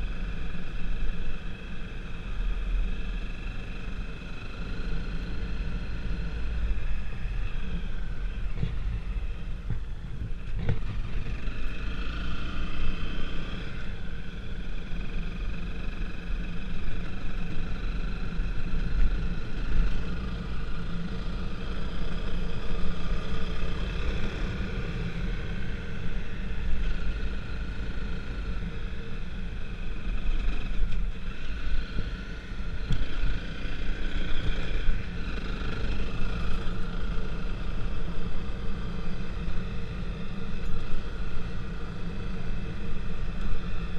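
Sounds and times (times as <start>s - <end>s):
vehicle engine rumble: 0.0s - 43.9s.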